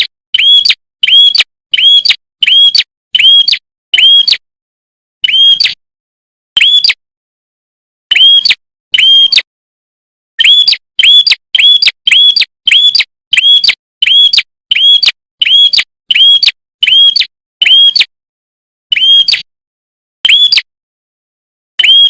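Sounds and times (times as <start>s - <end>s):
bird whistling calls: 10.4s - 17.2s.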